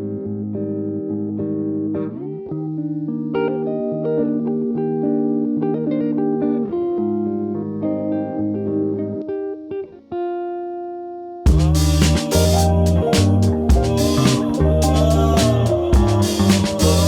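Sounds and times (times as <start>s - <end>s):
guitar background music: 0.0s - 17.0s
sustained bass line: 11.5s - 17.0s.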